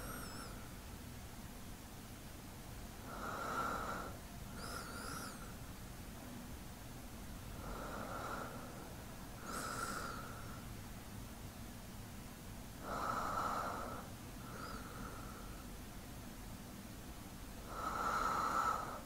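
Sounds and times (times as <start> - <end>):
man's slow sleeping breaths: 0.0 - 0.8, 3.0 - 5.6, 7.5 - 10.8, 12.8 - 15.8, 17.6 - 19.0.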